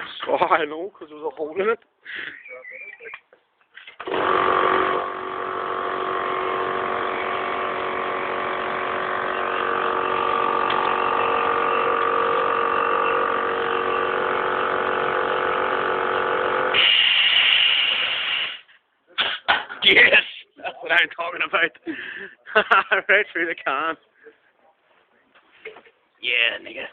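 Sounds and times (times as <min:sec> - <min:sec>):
electric air compressor running: 0:04.0 - 0:18.6
bright hiss: 0:16.7 - 0:18.7.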